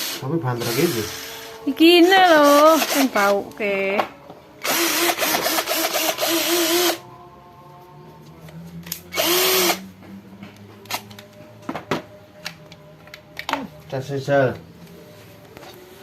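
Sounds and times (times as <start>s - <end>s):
cordless drill motor running: 0.0s - 1.6s, 2.5s - 3.1s, 4.6s - 7.0s, 9.1s - 9.8s.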